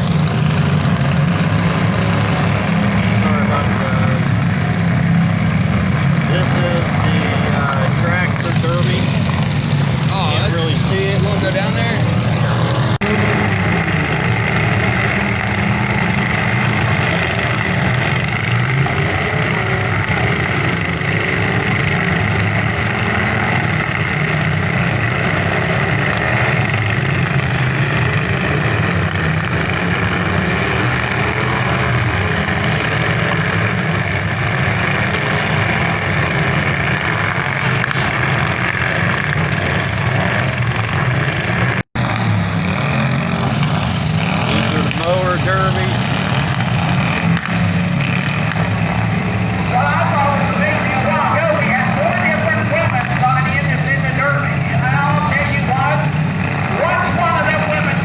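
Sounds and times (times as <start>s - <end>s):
car engines droning: 0.0s - 58.0s.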